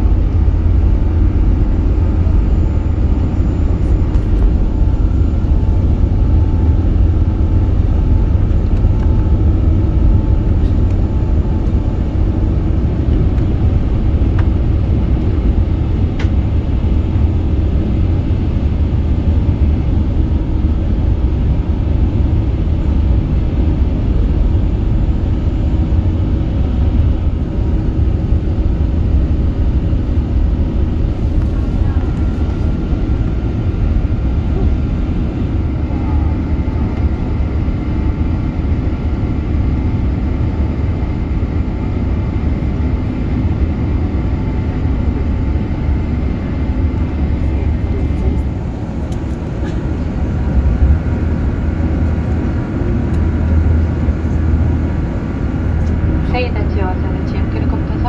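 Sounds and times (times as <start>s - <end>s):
airliner cabin rumble: 0.0s - 58.0s.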